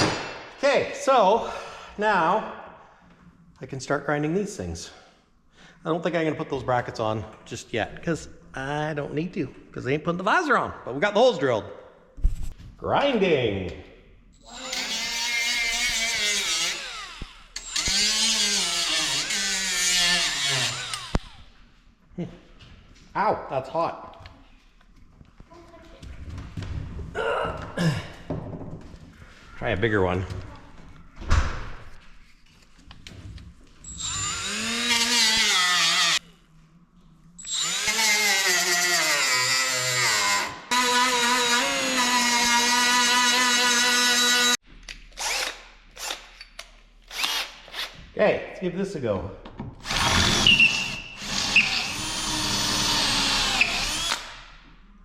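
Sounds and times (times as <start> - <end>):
power drill boring: 14.4 - 21.4, 33.8 - 36.2, 37.4 - 44.6, 45.2 - 46.2, 47.1 - 47.9, 49.8 - 54.4
electric grinder on metal: 14.5 - 21.4, 33.9 - 36.2, 37.5 - 44.6.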